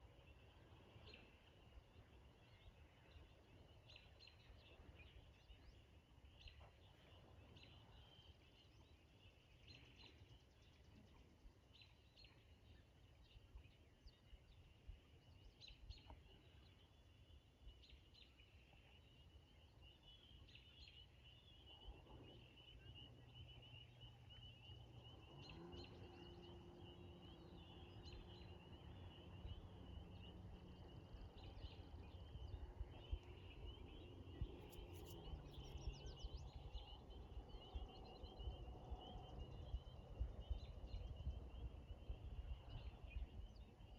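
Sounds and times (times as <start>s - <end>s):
low background rumble: 19.8s - 43.9s
steady low hum: 21.4s - 43.8s
short bird chirps: 34.3s - 36.4s.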